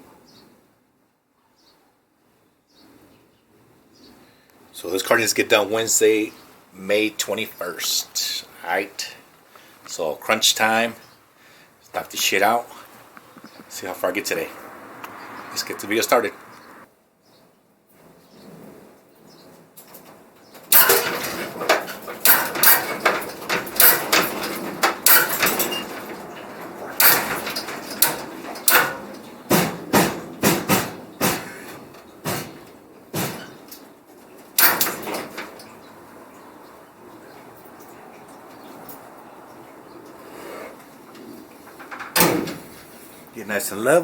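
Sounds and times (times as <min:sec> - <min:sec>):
hard objects knocking and clattering: 0:20.6 - 0:33.8.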